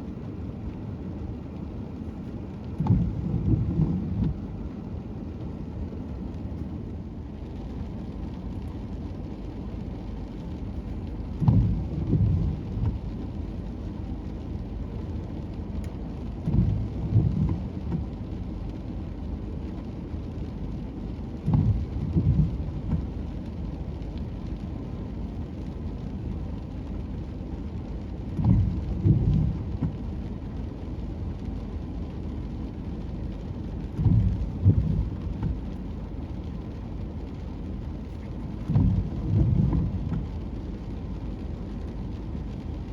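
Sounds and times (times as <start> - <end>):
ocean surf rumble: 33.9 - 36.6, 37.7 - 40.5.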